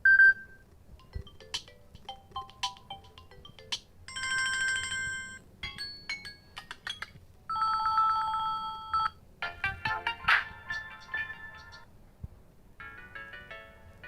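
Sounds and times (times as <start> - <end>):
phone alert tone melodies: 1.0 - 5.4.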